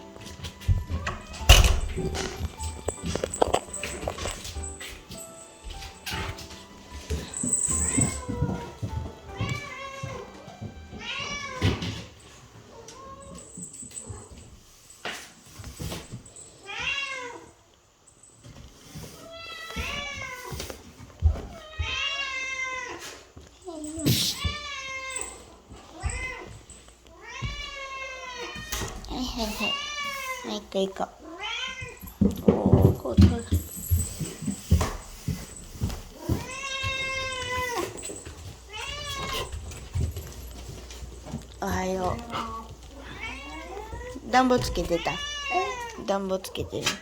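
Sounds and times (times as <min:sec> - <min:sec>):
cat meowing: 0:31.2 - 0:32.0, 0:42.0 - 0:46.1.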